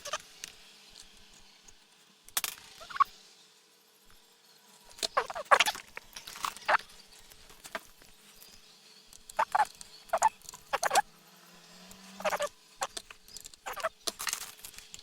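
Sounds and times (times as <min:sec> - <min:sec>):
short pitched animal calls: 0:00.0 - 0:00.2, 0:02.8 - 0:03.1, 0:05.1 - 0:05.9, 0:09.4 - 0:11.1, 0:12.2 - 0:13.0, 0:13.6 - 0:13.9.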